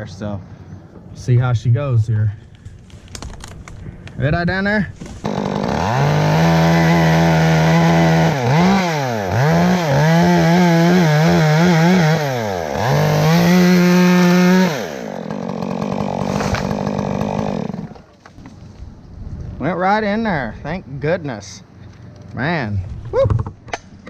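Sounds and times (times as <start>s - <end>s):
chainsaw cutting wood: 5.0s - 18.2s.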